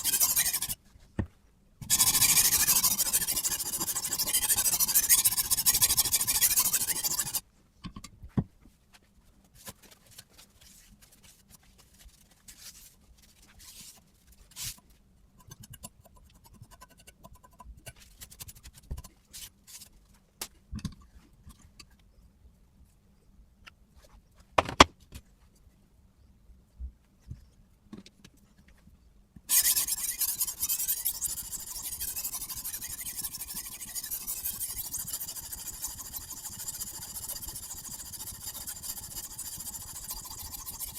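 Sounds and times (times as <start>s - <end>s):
sharpening stone scraping knife: 0.0s - 0.8s, 1.8s - 7.4s, 15.4s - 19.0s, 29.5s - 40.9s.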